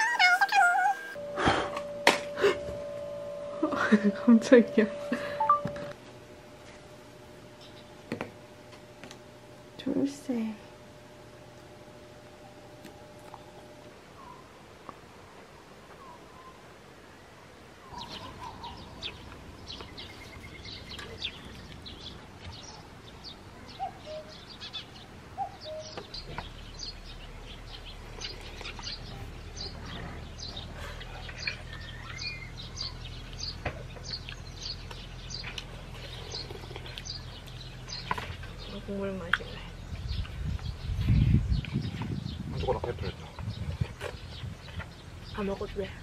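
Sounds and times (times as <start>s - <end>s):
low steady hum: 0.0s - 46.0s
small birds chirping: 13.2s - 15.0s, 15.9s - 46.0s.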